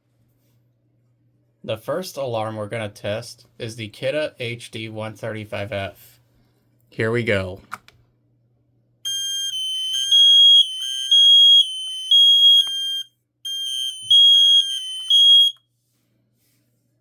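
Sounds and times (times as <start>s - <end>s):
loud high-pitched alarm beeps: 9.1s - 15.6s.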